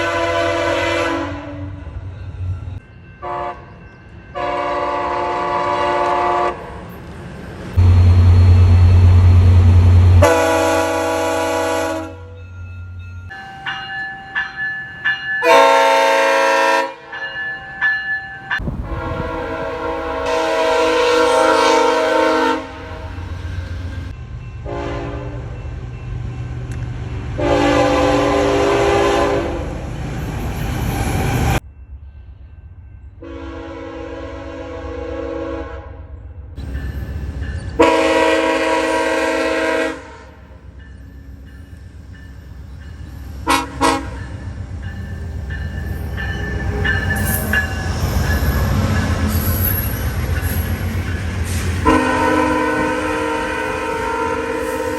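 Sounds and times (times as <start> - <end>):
locomotive air horns: 0.0 - 1.8, 3.2 - 3.6, 4.4 - 6.6, 10.2 - 12.4, 15.4 - 17.1, 18.6 - 23.4, 24.6 - 25.4, 27.4 - 29.7, 33.2 - 36.1, 37.8 - 40.4, 43.4 - 44.2, 51.5 - 54.9
train horn toots: 0.0 - 2.0, 3.2 - 3.7, 4.4 - 6.7, 10.2 - 12.4, 15.4 - 17.2, 18.6 - 23.3, 24.6 - 25.6, 27.4 - 29.7, 33.2 - 36.1, 37.8 - 40.5, 43.4 - 44.3, 51.7 - 54.9
passing train rumble: 0.0 - 54.9.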